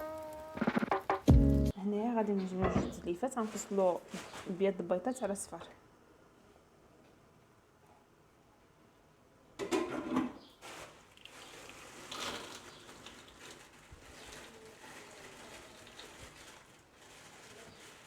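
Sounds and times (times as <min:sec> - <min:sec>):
handling eggshells: 0:10.6 - 0:18.0.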